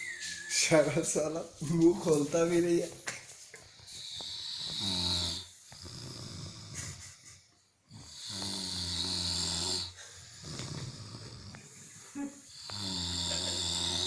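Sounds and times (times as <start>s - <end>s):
quiet breathing: 3.6s - 14.0s
person snoring: 3.8s - 14.0s.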